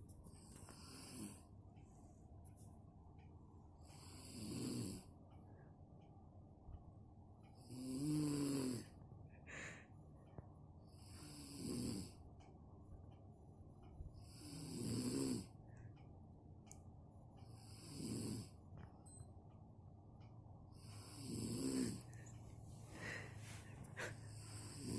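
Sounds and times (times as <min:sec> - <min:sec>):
woman snoring loudly: 0:04.0 - 0:05.1, 0:07.6 - 0:08.9, 0:11.0 - 0:12.2, 0:14.2 - 0:15.5, 0:17.6 - 0:18.5, 0:20.9 - 0:22.1, 0:24.0 - 0:24.9.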